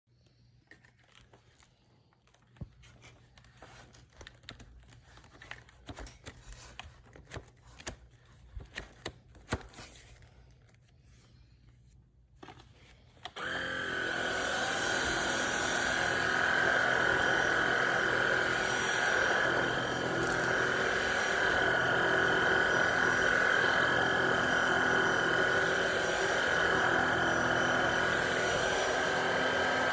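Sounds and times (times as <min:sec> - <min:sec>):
vacuum cleaner motor whining: 0:13.2 - 0:29.9.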